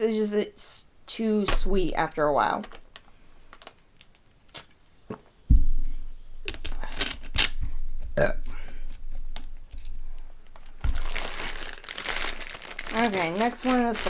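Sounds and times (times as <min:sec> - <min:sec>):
packaging crinkling: 0:02.5 - 0:04.8, 0:09.1 - 0:14.0
thump: 0:05.5 - 0:06.1
woman burping: 0:08.2 - 0:08.8.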